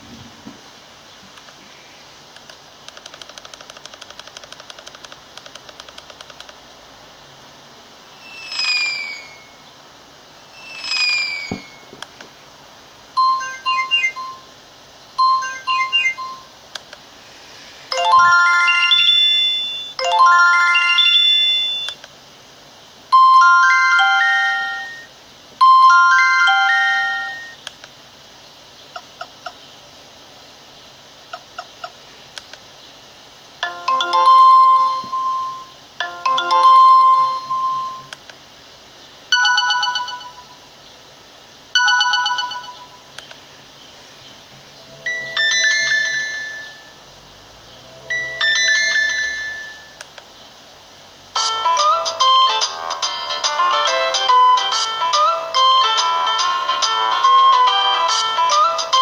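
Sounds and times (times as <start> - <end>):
phone ringtones: 13.2 - 14.5, 15.2 - 16.5, 17.9 - 22.0, 23.2 - 27.6, 33.6 - 38.1, 39.3 - 40.6, 41.8 - 43.0, 45.0 - 47.0, 48.1 - 50.0.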